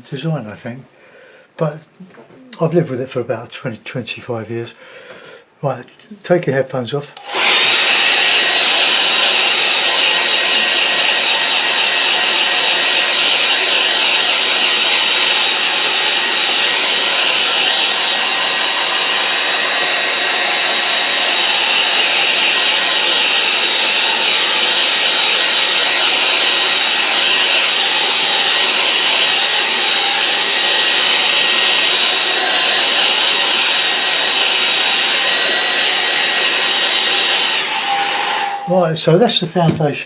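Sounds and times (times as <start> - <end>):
hairdryer blowing with whine: 7.2 - 38.9.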